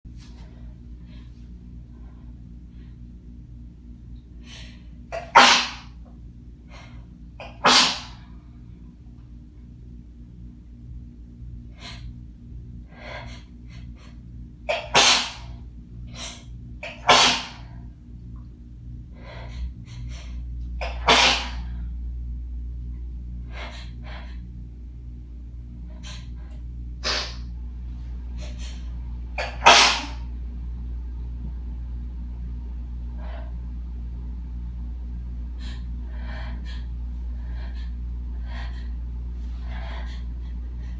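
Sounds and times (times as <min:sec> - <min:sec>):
person sneezing: 0:05.2 - 0:05.9, 0:07.4 - 0:08.2, 0:14.7 - 0:15.5, 0:16.2 - 0:17.7, 0:20.8 - 0:21.7, 0:27.0 - 0:27.4, 0:29.4 - 0:30.3.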